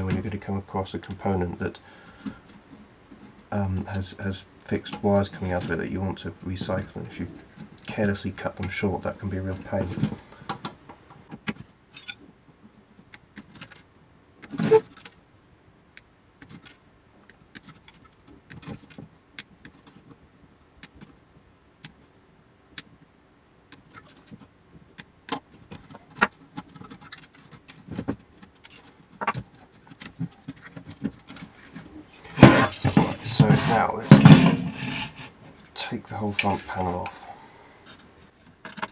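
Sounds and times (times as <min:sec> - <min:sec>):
hand tools clicking and snipping: 0:32.3 - 0:35.3
metal parts clattering: 0:32.3 - 0:35.3.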